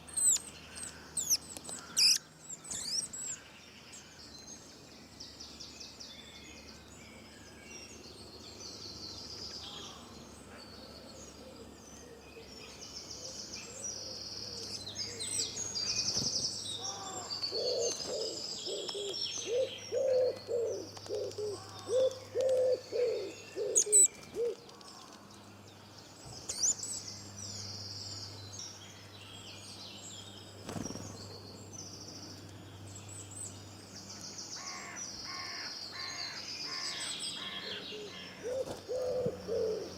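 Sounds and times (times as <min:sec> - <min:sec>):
birds chirping and singing: 0:00.0 - 0:39.9
low repeated bird calls: 0:13.2 - 0:25.0.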